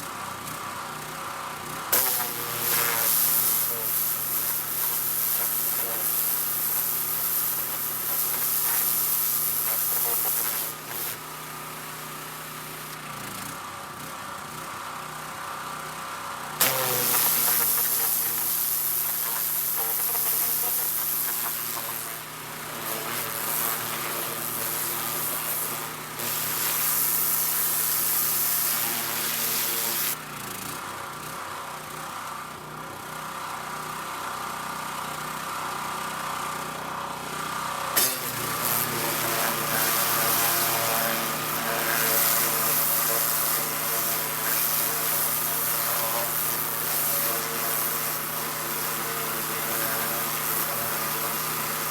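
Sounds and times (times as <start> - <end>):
pressure washer engine running: 0.0 - 51.9
water spray hissing on metal: 1.9 - 11.2, 16.6 - 30.2, 38.0 - 51.9.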